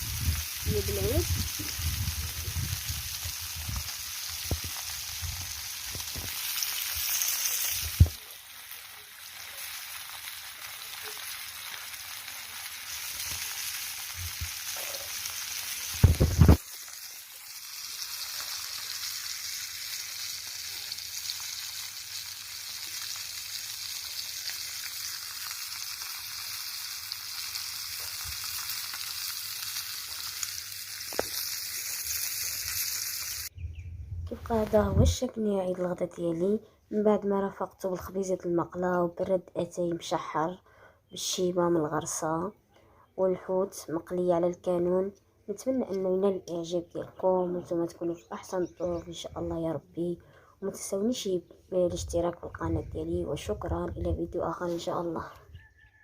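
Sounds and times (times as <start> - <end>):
fish sizzling in hot oil: 0.0 - 33.5.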